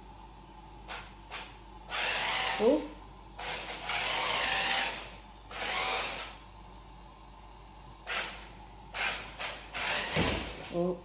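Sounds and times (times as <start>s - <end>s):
electric toy car motors whirring: 0.9s - 6.4s, 8.0s - 10.7s.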